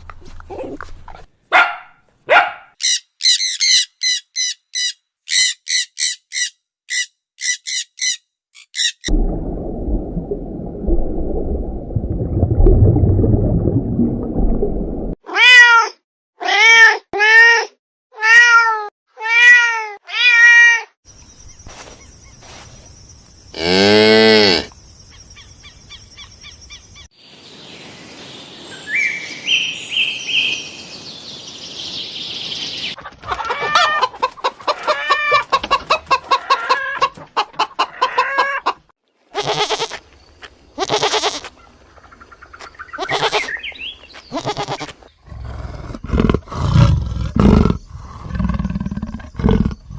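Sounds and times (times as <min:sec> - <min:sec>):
low rumbling noise: 0:09.1 - 0:15.2
cat meows: 0:15.3 - 0:20.9.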